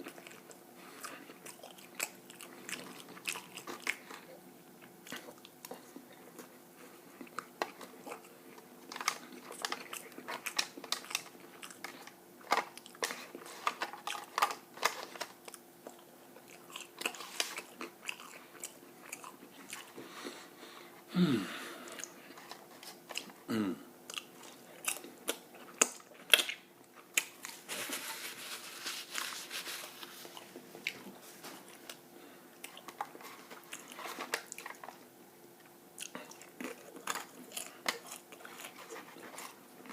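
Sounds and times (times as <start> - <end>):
person chewing and crunching: 0.0 - 20.4, 21.8 - 23.5, 24.1 - 39.9
soft hissing noise: 27.5 - 31.6.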